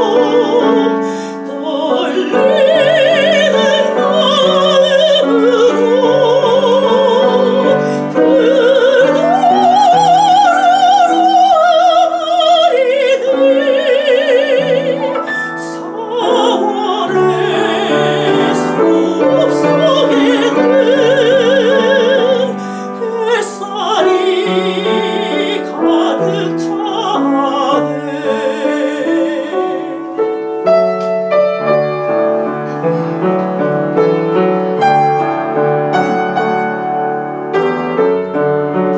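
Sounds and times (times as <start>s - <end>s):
soprano singing operatically: 0.0s - 30.6s
piano accompaniment: 0.0s - 38.9s.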